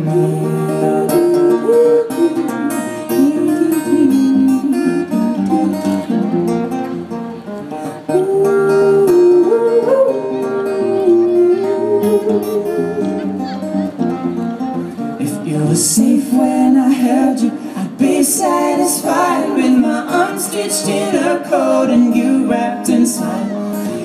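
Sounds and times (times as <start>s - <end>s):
acoustic guitar strumming: 0.0s - 24.0s
sliding melody line: 8.2s - 14.0s.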